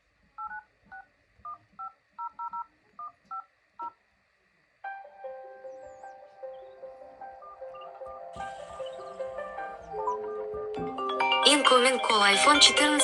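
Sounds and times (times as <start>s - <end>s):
ringtone melody: 4.9s - 13.0s.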